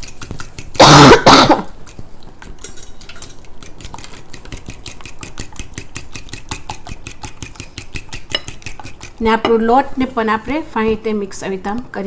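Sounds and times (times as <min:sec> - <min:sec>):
utensil clicking against bowl: 0:01.9 - 0:09.6.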